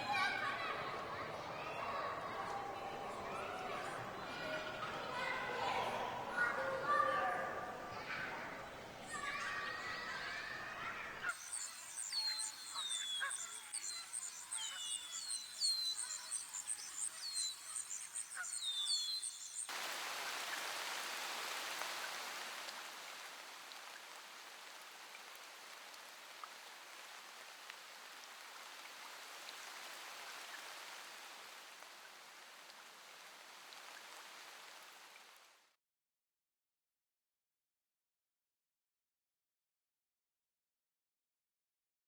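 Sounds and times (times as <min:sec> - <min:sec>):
small birds chirping: 0:00.0 - 0:22.4
steady rushing hiss: 0:19.5 - 0:35.4.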